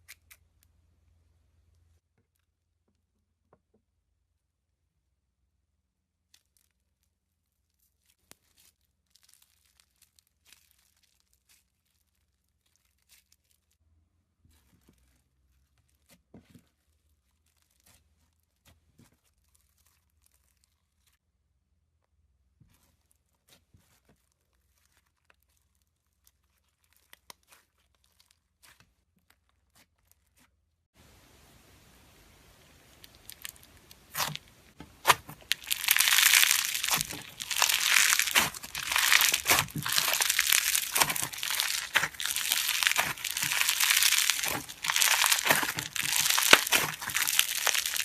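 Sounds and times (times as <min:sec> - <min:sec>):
slime crackling and popping: 0:06.3 - 0:13.8, 0:22.8 - 0:30.5, 0:32.8 - 0:48.0.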